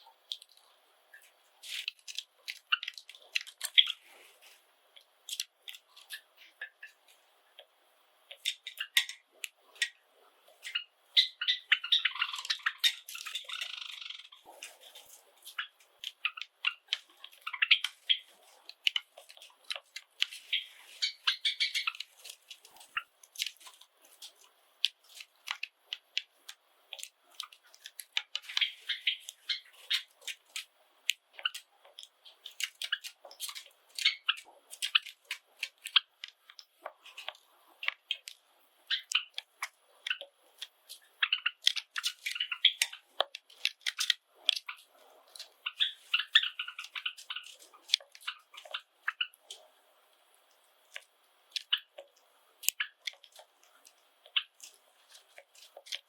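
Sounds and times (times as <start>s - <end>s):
birds cracking seeds: 0.2s - 7.2s, 8.3s - 49.7s, 50.3s - 56.0s
high bird chirping: 10.6s - 14.5s, 15.5s - 19.0s, 20.4s - 22.1s, 28.4s - 30.5s, 38.9s - 39.4s, 41.0s - 43.0s, 45.6s - 49.4s.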